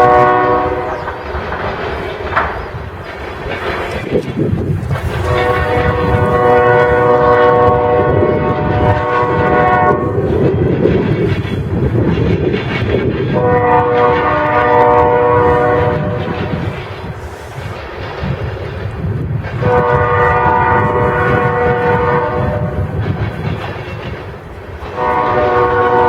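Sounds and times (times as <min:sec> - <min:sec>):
locomotive air horn: 0:00.0 - 0:01.0, 0:05.2 - 0:10.3, 0:13.4 - 0:16.3, 0:19.6 - 0:22.9, 0:24.9 - 0:26.0
passing train rumbling: 0:00.0 - 0:26.0.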